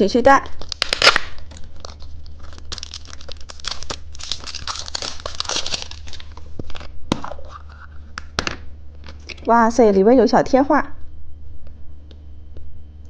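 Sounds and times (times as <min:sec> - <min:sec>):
snack packaging crinkling and tearing: 0:00.4 - 0:08.4.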